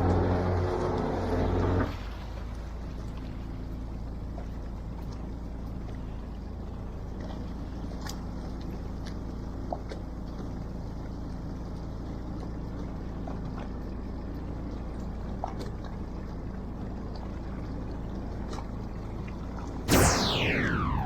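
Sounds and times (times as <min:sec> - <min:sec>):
boat engine low drone: 0:00.0 - 0:21.0.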